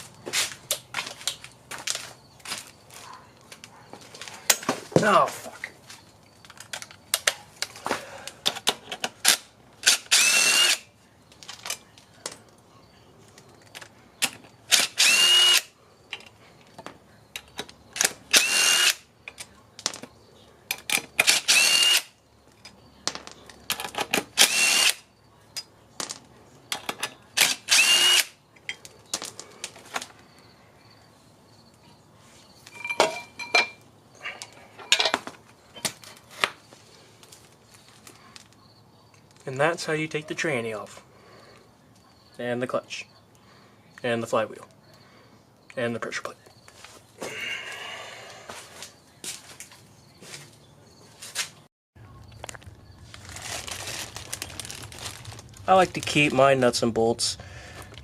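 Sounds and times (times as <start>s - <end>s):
power tool spinning with whine: 10.1s - 10.8s, 14.7s - 15.7s, 18.3s - 19.0s, 21.3s - 22.1s, 24.4s - 25.0s, 27.5s - 28.3s
metal parts clinking: 32.6s - 33.8s, 34.4s - 35.9s.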